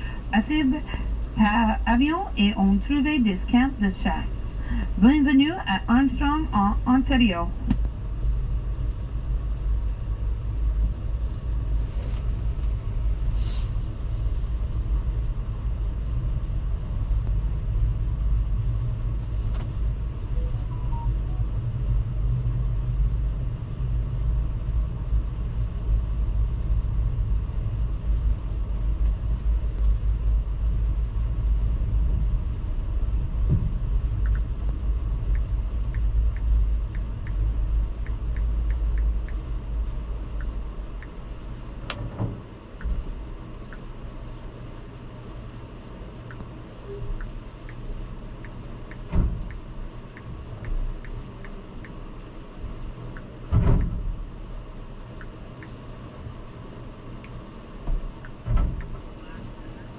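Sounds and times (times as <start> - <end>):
passenger train rumbling: 0.0 - 59.9.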